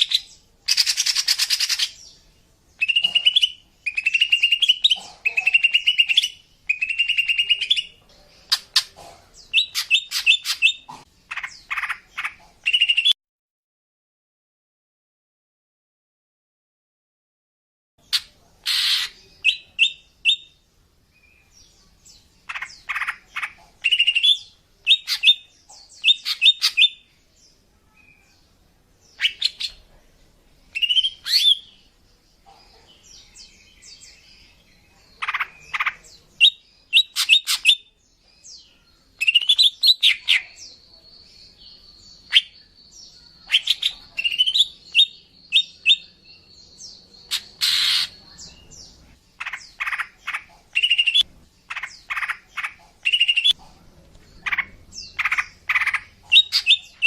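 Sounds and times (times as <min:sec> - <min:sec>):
bird chirping and whistling: 0:02.8 - 0:04.8, 0:50.8 - 0:51.2.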